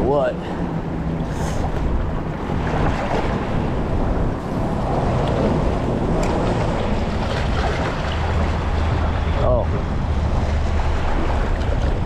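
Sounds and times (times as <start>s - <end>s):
moving water: 0.0s - 12.0s
wind buffeting microphone: 0.0s - 12.0s.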